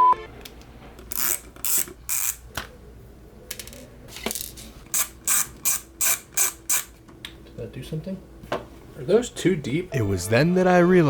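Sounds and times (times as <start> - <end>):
screwdriver bit scraping and clicking: 1.1 - 2.4, 4.9 - 6.9.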